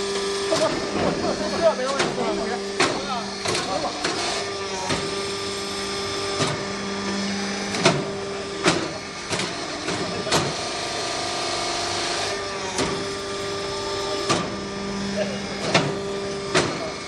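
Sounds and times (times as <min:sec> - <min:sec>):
machine motor hum: 0:00.0 - 0:17.0
sharp machine knocks: 0:01.8 - 0:05.2, 0:06.3 - 0:10.7, 0:12.7 - 0:13.1, 0:14.2 - 0:14.7, 0:15.5 - 0:17.0.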